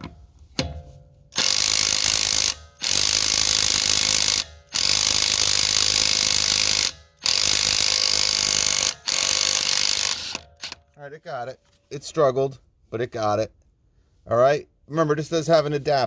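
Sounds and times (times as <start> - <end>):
impact wrench hammering: 0.0 - 10.8.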